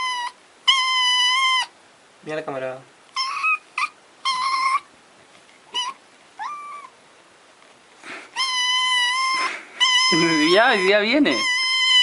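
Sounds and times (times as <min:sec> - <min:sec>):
cat meowing: 0:03.2 - 0:04.9, 0:05.7 - 0:07.0, 0:08.3 - 0:12.0.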